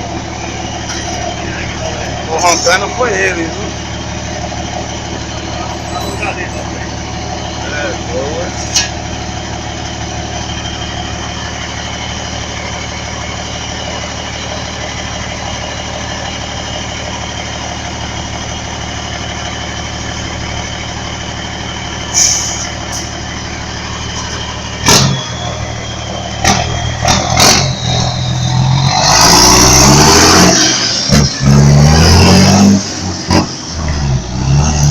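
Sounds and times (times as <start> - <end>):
diesel truck engine idling and revving: 0.0 - 34.9
brief hiss: 22.2 - 22.7.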